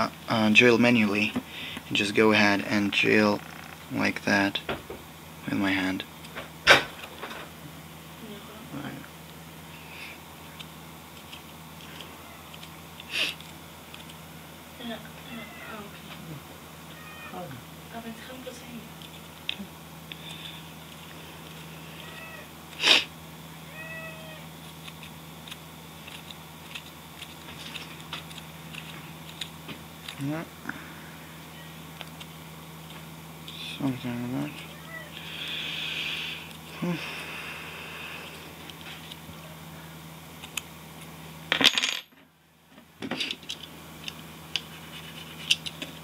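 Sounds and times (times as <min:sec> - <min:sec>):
low steady hum: 0:00.0 - 0:46.0
cat meowing: 0:15.2 - 0:15.9, 0:16.9 - 0:17.6, 0:21.9 - 0:22.5, 0:23.7 - 0:24.5, 0:34.6 - 0:35.2.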